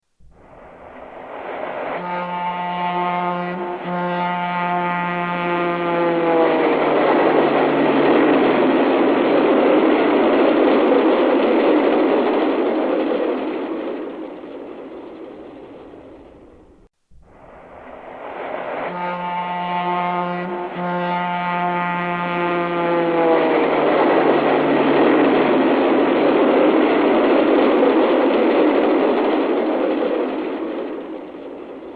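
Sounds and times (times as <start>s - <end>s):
train rushing past: 0.2s - 31.9s
train horn: 0.9s - 9.0s, 17.3s - 25.9s.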